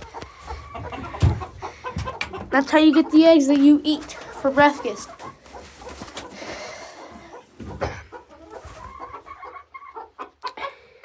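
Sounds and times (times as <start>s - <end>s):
chickens clucking: 0.0s - 11.0s
rustling: 4.0s - 9.3s.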